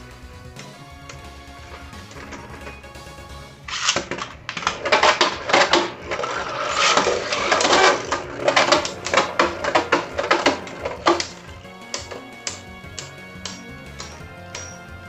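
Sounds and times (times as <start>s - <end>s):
spinning tops clashing: 3.7s - 15.0s.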